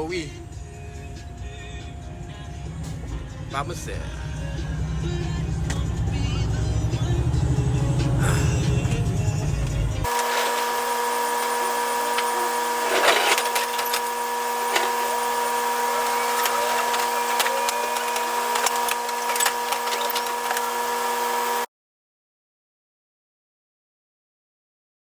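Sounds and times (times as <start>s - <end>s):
mechanical hum with whine: 4.4s - 21.7s.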